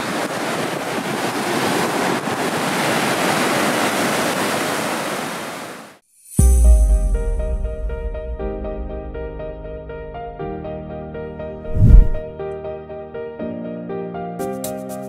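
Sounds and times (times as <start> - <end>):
music with deep bass hit: 6.4 - 10.7
wind buffeting microphone: 11.6 - 12.3.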